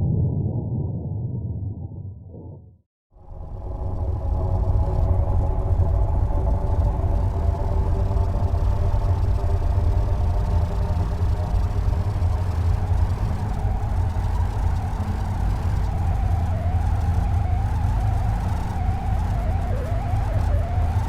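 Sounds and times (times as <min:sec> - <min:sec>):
steady deep rumble: 0:00.0 - 0:21.0
wavering high tone: 0:13.6 - 0:21.0.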